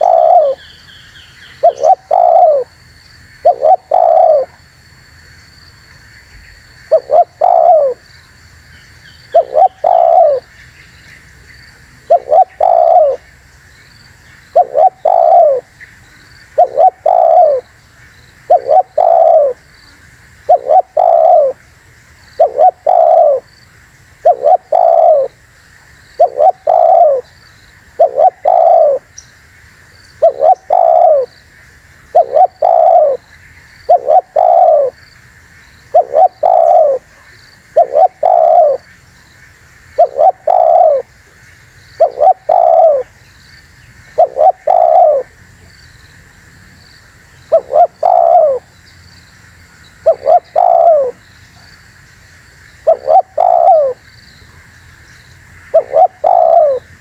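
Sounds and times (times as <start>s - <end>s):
dove cooing: 0.0s - 0.7s, 1.5s - 2.7s, 3.4s - 4.6s, 6.9s - 8.0s, 9.3s - 10.5s, 11.8s - 13.2s, 14.5s - 15.8s, 16.5s - 17.8s, 18.4s - 19.6s, 20.4s - 21.6s, 22.4s - 23.5s, 24.2s - 25.4s, 26.2s - 27.3s, 27.9s - 29.1s, 30.2s - 31.3s, 32.1s - 33.3s, 33.9s - 35.0s, 35.9s - 38.9s, 40.0s - 41.1s, 42.0s - 43.2s, 44.1s - 45.4s, 47.5s - 48.7s, 50.0s - 51.2s, 52.8s - 54.0s, 55.7s - 57.0s
small birds chirping: 0.0s - 2.7s, 6.3s - 21.6s, 26.1s - 29.4s, 30.0s - 31.5s, 32.1s - 57.0s.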